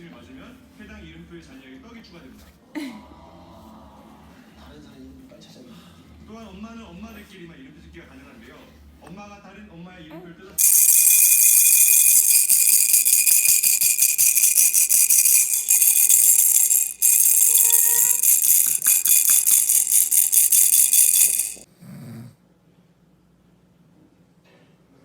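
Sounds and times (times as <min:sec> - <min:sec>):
baby rattle shaken: 0:10.6 - 0:21.7.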